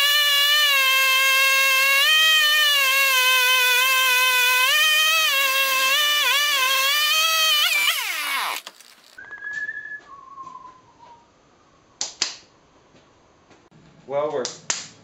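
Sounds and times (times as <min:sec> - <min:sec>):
power tool motor whining: 0:00.0 - 0:09.2.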